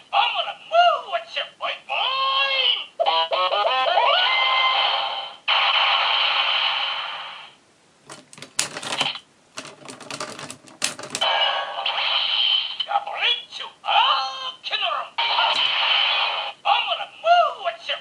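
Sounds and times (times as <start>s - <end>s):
plastic toy clicks: 8.1s - 11.2s.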